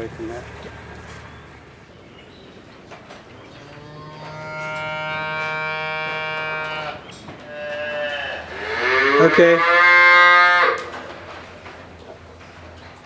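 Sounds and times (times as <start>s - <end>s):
cow mooing: 3.6s - 11.0s.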